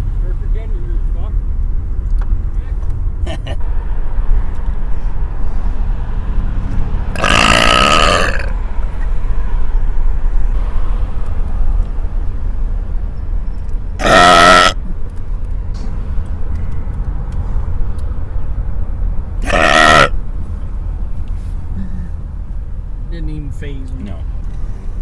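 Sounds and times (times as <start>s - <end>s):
car driving rumble: 0.0s - 25.0s
loud belches: 7.2s - 8.5s, 14.0s - 14.8s, 19.4s - 20.1s.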